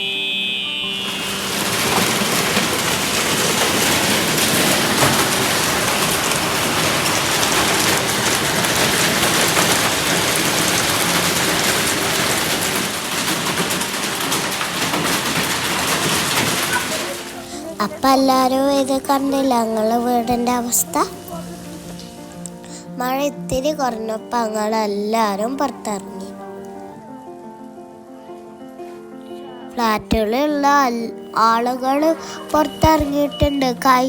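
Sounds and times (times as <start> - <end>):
hailstones striking hard surfaces: 0.9 - 23.8
heavy rain hissing: 0.9 - 24.0, 31.6 - 34.0.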